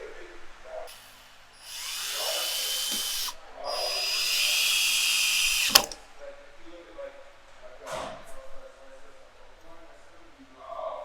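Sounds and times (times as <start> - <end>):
power drill whining: 0.9 - 6.0
sharp click: 1.8 - 6.0.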